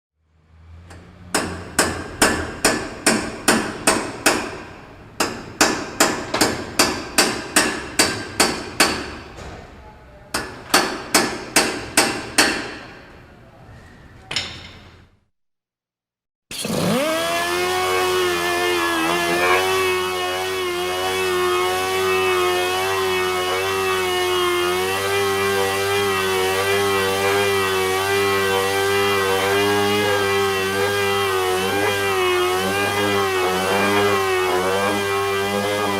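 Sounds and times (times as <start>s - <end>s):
hammer striking metal: 0.9s - 9.3s, 10.3s - 13.1s
motor whining: 16.5s - 24.9s.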